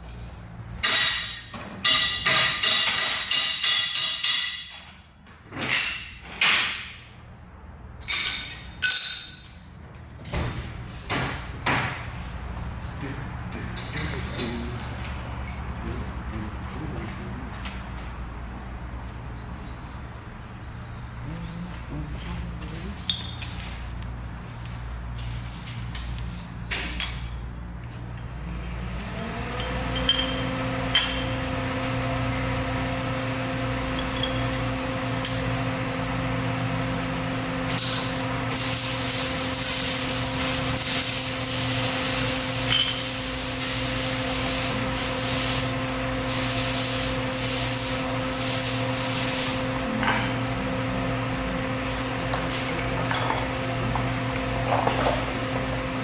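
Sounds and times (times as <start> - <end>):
sharp metal clinks: 15.3 - 15.8.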